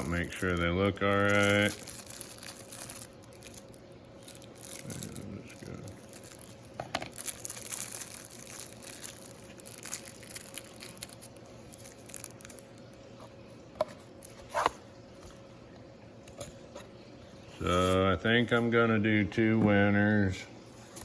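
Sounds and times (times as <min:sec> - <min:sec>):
packaging rustling: 0:00.0 - 0:13.0.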